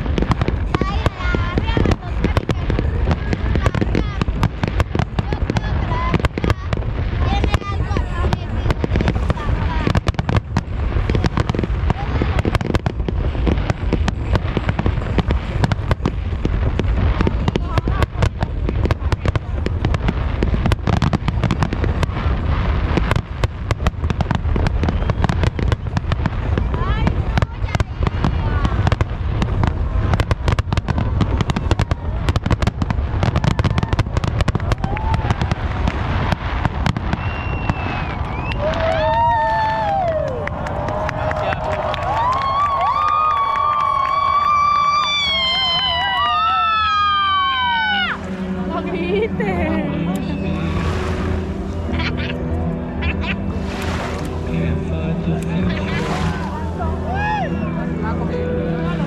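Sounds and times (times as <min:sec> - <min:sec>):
fireworks sharp bangs: 0:00.0 - 0:39.5, 0:53.2 - 0:58.4
low rumble of bursting shells: 0:00.0 - 0:39.6
low booming: 0:00.0 - 0:41.2, 0:45.9 - 0:59.0.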